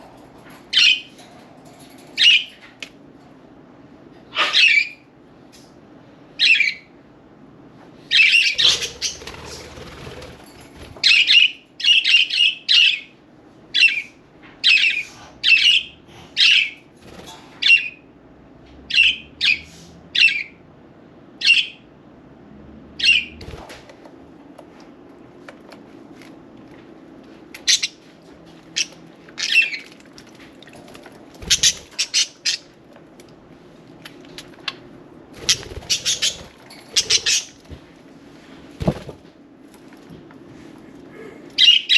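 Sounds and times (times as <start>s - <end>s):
budgerigars squawking and chirping: 8.1s - 9.2s, 27.6s - 28.0s, 31.4s - 32.7s, 35.4s - 37.6s, 41.6s - 41.9s.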